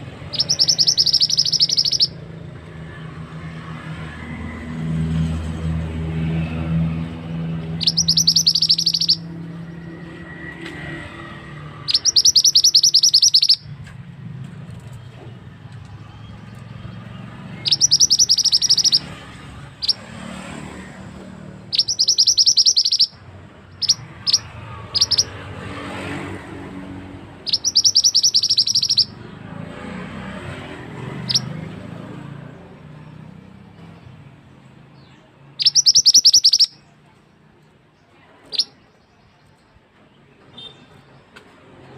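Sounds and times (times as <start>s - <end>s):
bird trilling: 0.1s - 2.3s, 7.5s - 10.2s, 11.2s - 13.8s, 16.5s - 20.2s, 21.1s - 25.8s, 27.2s - 29.3s, 31.1s - 31.6s, 35.6s - 36.9s
high bird chips: 0.3s - 2.1s, 7.8s - 9.2s, 11.9s - 13.7s, 17.6s - 19.1s, 21.7s - 23.2s, 23.8s - 25.3s, 27.5s - 29.1s, 35.6s - 36.8s.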